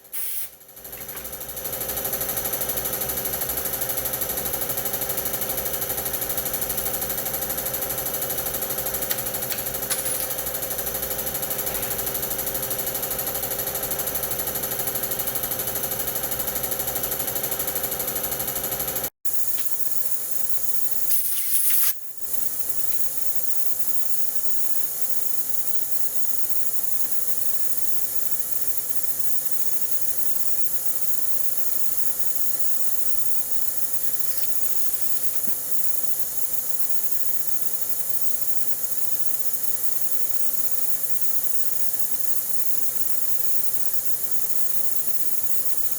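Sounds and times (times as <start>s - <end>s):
loud blast of hiss: 0.0s - 0.6s.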